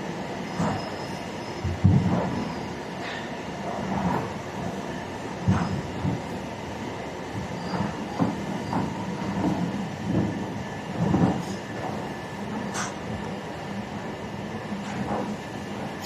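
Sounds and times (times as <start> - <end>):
machine clanks and knocks: 1.6 - 2.4, 7.3 - 10.4.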